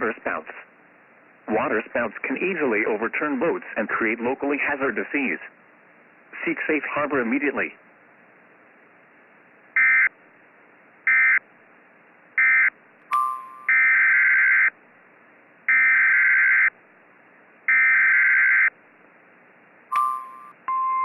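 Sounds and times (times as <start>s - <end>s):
electronic beep: 13.1s - 13.9s, 19.9s - 21.0s.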